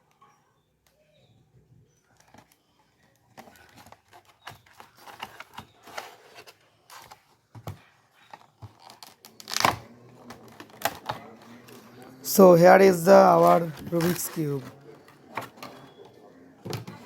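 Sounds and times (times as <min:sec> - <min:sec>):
packaging being torn and crinkled: 0:08.7 - 0:11.1.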